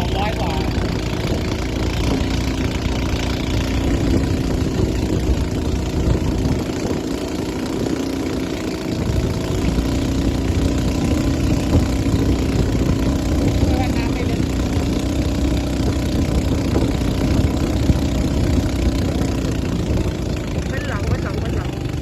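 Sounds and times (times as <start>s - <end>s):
boat engine humming: 0.0s - 22.0s.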